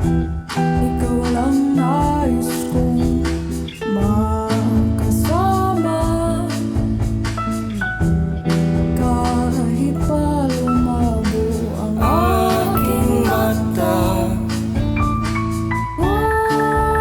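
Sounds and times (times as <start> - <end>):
instrumental backing with bass: 0.0 - 17.0
person singing: 0.7 - 6.8, 9.0 - 14.9.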